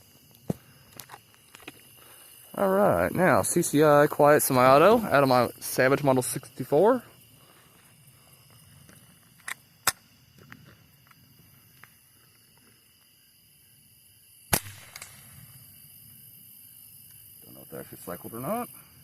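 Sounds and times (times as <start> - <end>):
rifle shot crack: 14.5 - 15.6.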